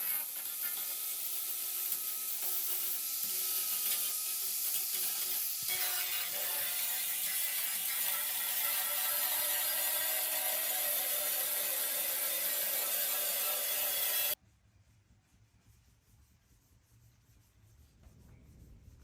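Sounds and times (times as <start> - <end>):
power tool scraping rust off steel: 0.0 - 14.4.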